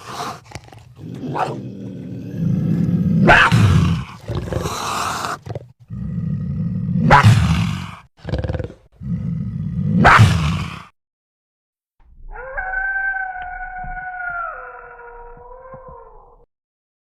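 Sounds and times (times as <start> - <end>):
monster growling: 0.0 - 10.9
loud monster snarls: 0.0 - 11.0.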